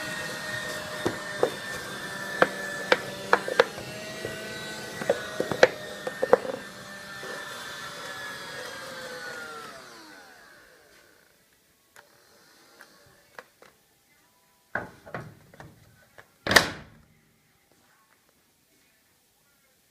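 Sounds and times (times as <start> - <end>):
vacuum cleaner motor whining: 0.0 - 13.5.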